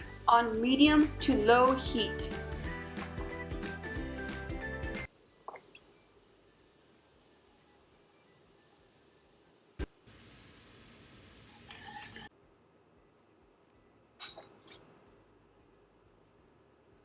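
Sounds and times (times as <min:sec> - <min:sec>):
sizzling hiss: 0:10.1 - 0:12.3
whisk scraping a pan: 0:10.2 - 0:12.3.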